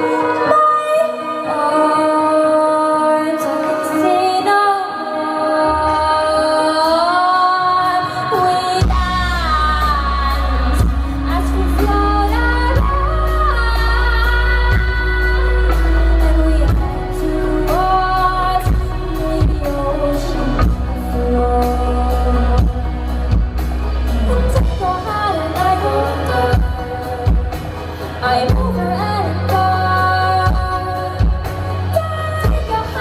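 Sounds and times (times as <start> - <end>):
woman singing: 0.0 - 33.0
boomy bass: 8.8 - 33.0.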